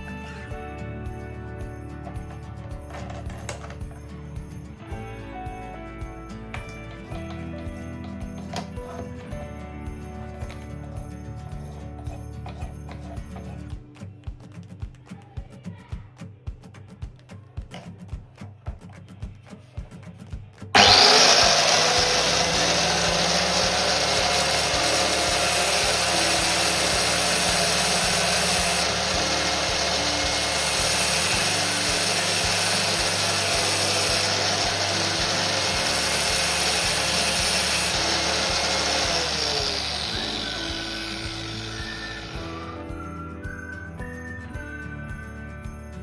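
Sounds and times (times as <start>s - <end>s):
drill bit grinding on wheel: 2.0s - 4.1s, 6.6s - 9.6s, 20.8s - 42.8s
angle grinder whining: 2.0s - 4.2s, 6.3s - 13.7s, 20.8s - 42.9s.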